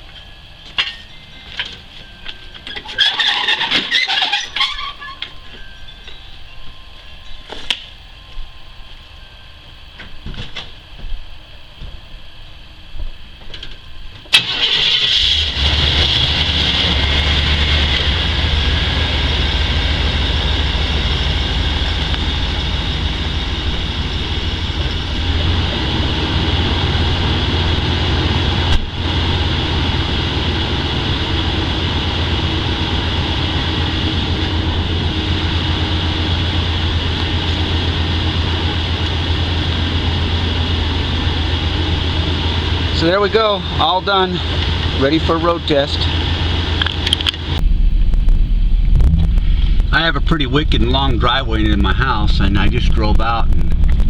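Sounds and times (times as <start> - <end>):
van engine starting and idling: 1.6 - 5.1, 14.3 - 54.0.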